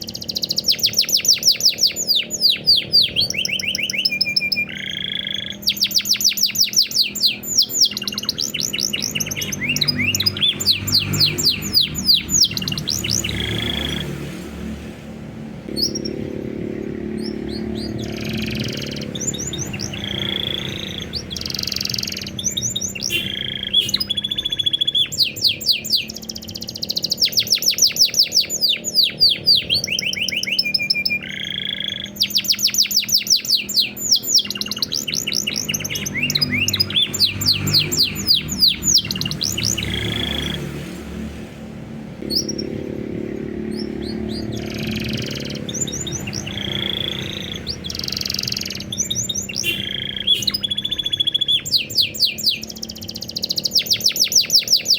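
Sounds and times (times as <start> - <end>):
canary singing: 0.0 - 54.9.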